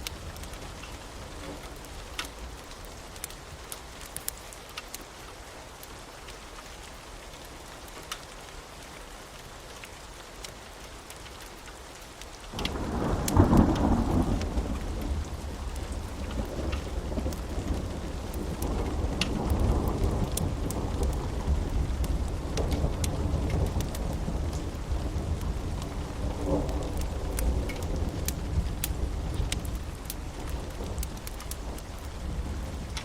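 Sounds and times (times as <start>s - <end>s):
steady rain: 0.0s - 33.0s
thunder rumbling: 12.6s - 33.0s.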